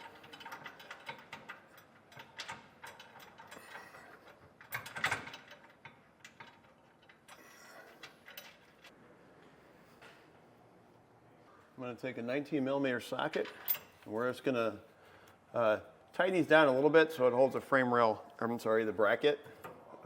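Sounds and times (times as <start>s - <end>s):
metal clicks and knocks: 0.0s - 7.4s.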